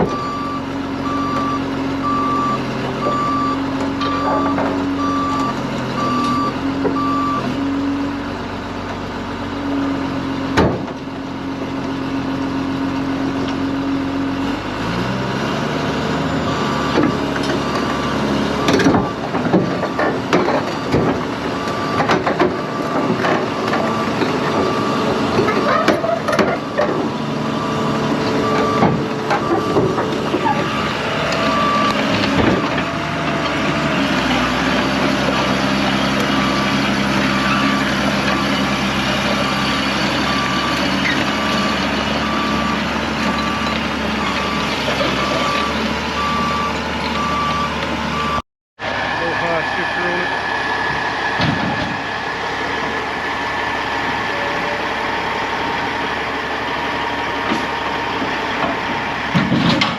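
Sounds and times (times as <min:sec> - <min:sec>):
diesel engine running: 0:00.0 - 0:59.9
back-up alarm beeping: 0:00.1 - 0:07.5, 0:43.4 - 0:48.4.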